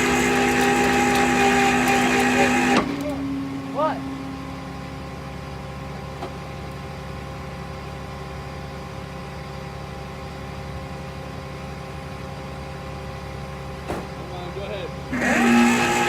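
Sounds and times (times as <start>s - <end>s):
vehicle engine idling: 3.0s - 15.2s.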